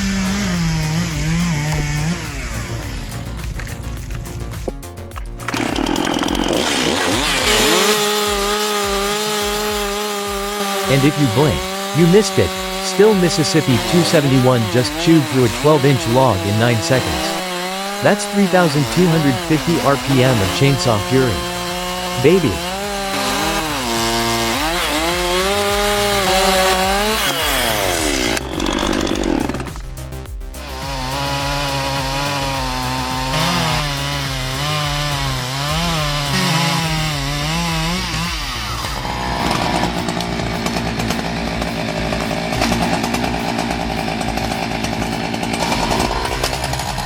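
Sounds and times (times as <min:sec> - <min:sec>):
chainsaw cutting wood: 0:00.0 - 0:47.0.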